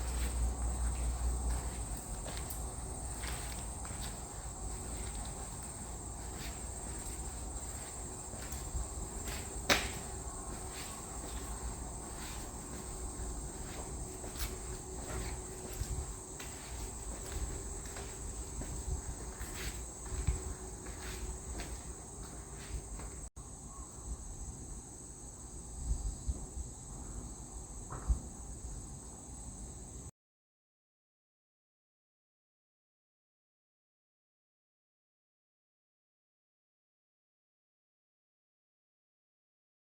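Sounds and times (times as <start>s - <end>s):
faint steady hum: 0.0s - 30.1s
insects chirring: 0.0s - 30.1s.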